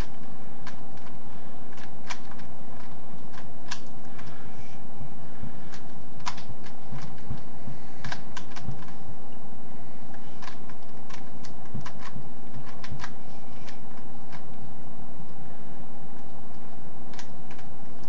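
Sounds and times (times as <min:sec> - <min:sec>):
puzzle cube plastic clicks: 0:00.0 - 0:04.3, 0:05.7 - 0:09.0, 0:10.1 - 0:14.6, 0:16.2 - 0:18.0.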